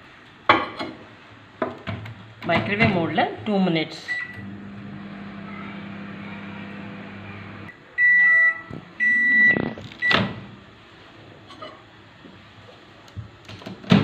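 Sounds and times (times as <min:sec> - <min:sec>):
microwave beeps: 0:04.1 - 0:04.6, 0:05.3 - 0:10.2
microwave oven humming: 0:04.1 - 0:07.8.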